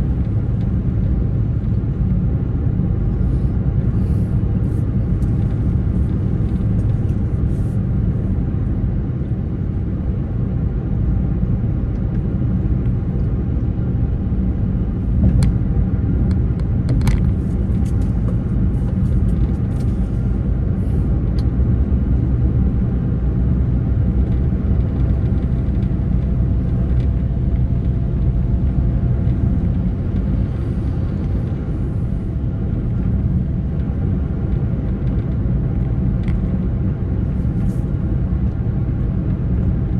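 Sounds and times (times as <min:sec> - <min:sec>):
vehicle engine and road noise: 0:00.0 - 0:39.9.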